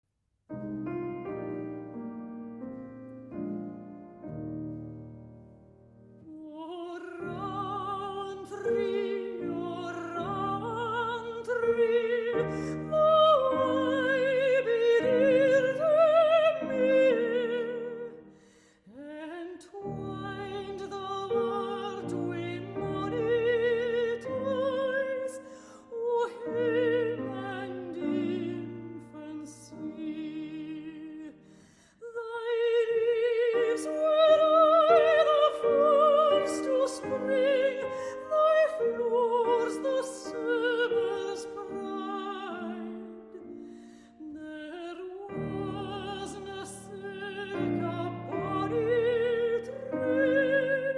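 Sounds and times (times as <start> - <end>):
piano accompaniment: 0.5 - 31.6, 32.4 - 50.9
operatic singing with vibrato: 44.2 - 50.9.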